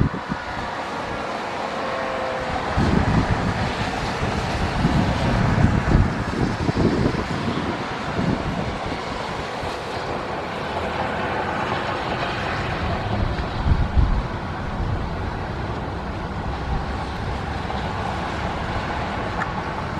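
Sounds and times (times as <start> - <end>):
wind buffeting microphone: 0.0 - 19.9.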